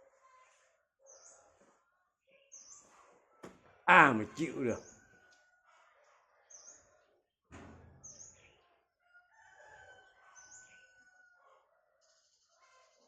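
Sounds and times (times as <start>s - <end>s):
small birds chirping: 0.2s - 3.2s, 6.4s - 7.2s, 8.0s - 8.6s, 12.0s - 13.0s
faint rooster crow: 4.1s - 7.1s, 8.0s - 13.0s.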